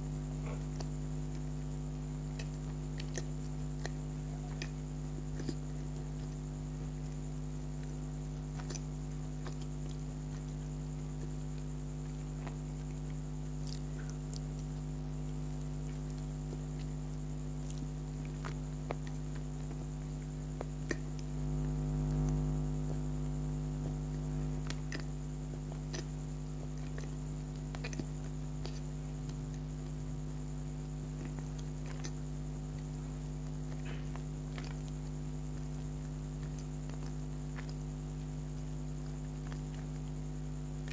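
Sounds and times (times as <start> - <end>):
steady electrical hum: 0.0 - 40.9
chewing and wet mouth clicks: 2.3 - 7.0, 7.6 - 21.3, 23.8 - 29.7, 31.2 - 32.2, 33.6 - 37.8.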